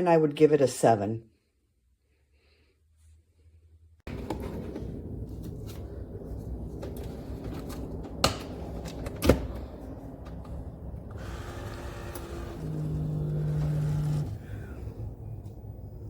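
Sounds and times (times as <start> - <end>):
low steady hum: 4.1 - 16.0.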